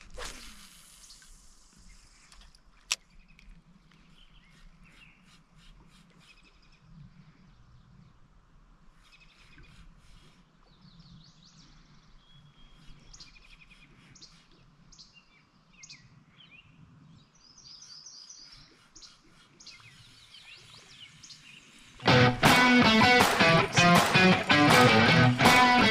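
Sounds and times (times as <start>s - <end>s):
birds chirping: 9.1s - 25.9s
loud guitar music: 22.0s - 25.9s
sharp click: 22.4s - 25.9s.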